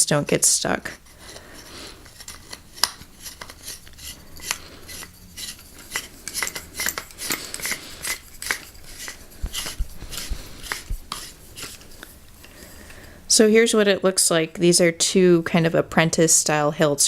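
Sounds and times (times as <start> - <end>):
metallic clicks and scrapes: 0.8 - 13.0.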